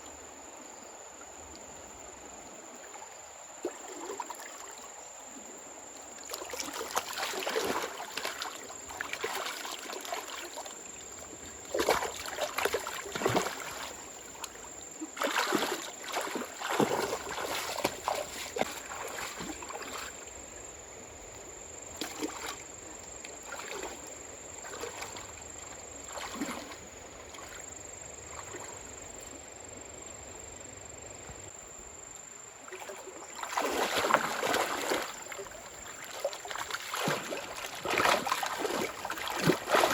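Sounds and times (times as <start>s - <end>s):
water splashing and sloshing: 2.7s - 29.9s, 32.6s - 39.9s
water trickling: 6.2s - 20.4s, 32.8s - 39.9s.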